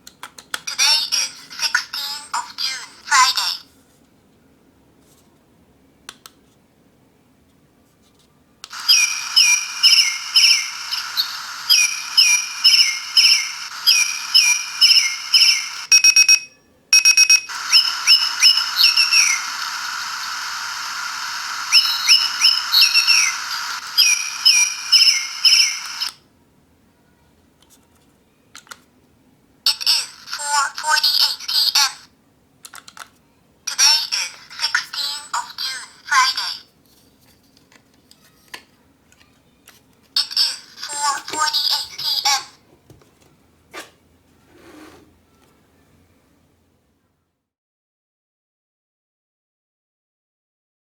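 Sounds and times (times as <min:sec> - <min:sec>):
recorded bird chirps from speaker: 0:21.7 - 0:25.8.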